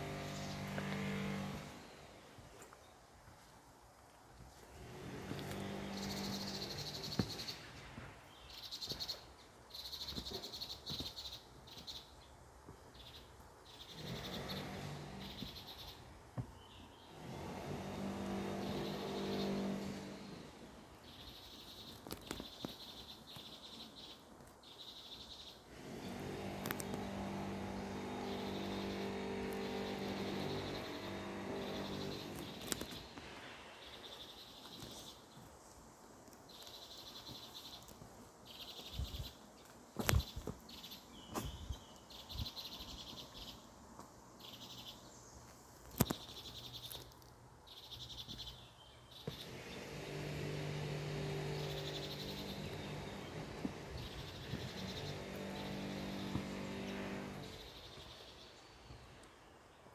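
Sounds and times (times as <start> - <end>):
low engine-like hum: 0.0 - 2.4, 17.2 - 20.9, 25.7 - 33.2, 49.4 - 58.2.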